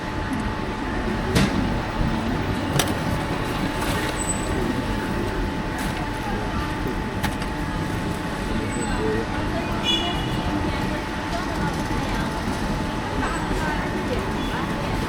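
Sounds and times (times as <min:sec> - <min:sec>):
traffic running: 0:00.0 - 0:15.0.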